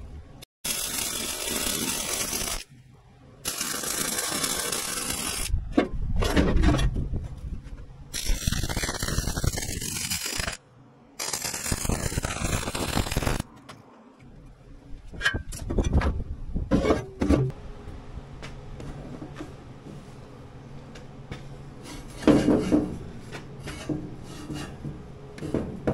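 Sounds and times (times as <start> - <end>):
welding arc crackling: 0.6 - 2.7, 3.4 - 5.5, 8.1 - 10.6, 11.2 - 13.5.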